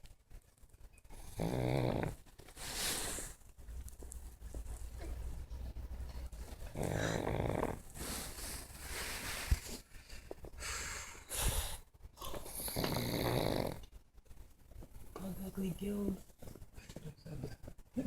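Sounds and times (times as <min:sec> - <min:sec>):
dog snoring: 0:01.1 - 0:02.2, 0:06.6 - 0:08.3, 0:11.4 - 0:13.9.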